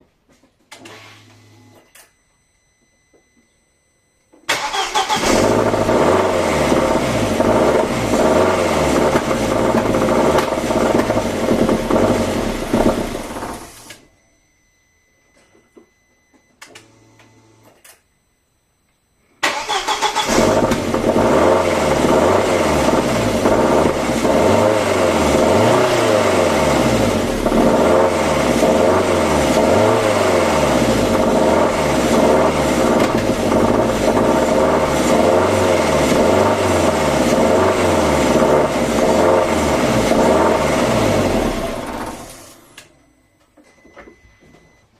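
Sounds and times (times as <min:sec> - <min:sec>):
car engine cranking and starting: 0:04.5 - 0:14.0, 0:19.4 - 0:43.0
wavering engine noise: 0:04.6 - 0:13.8.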